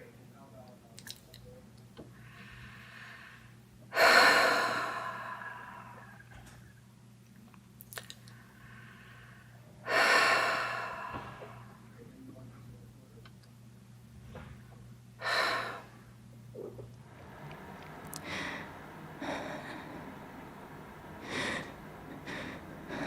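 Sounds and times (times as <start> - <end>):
woman breathing: 2.1 - 6.8, 8.2 - 11.9, 15.2 - 16.1, 17.2 - 23.0
mouth clicks: 7.8 - 8.4.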